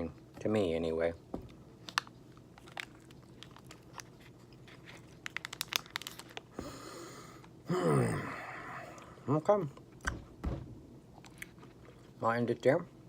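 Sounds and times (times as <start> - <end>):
crackles: 1.8 - 6.6
crunchy chewing: 2.5 - 6.5.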